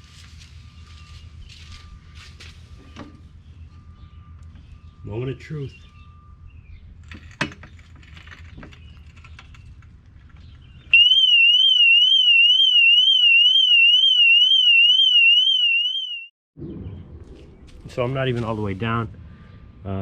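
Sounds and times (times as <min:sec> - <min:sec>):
car alarm siren warbling: 0:03.5 - 0:06.6, 0:10.9 - 0:16.3.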